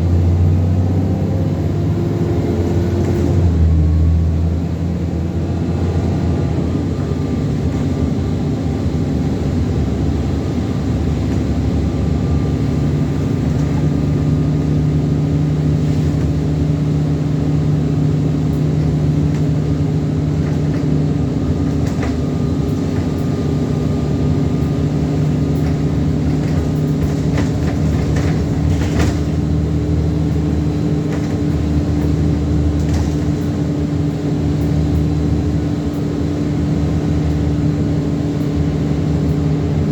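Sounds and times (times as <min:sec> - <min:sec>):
bus engine droning: 0:00.0 - 0:39.9
rattles and clicks: 0:21.6 - 0:23.3, 0:25.5 - 0:29.5, 0:31.0 - 0:33.6.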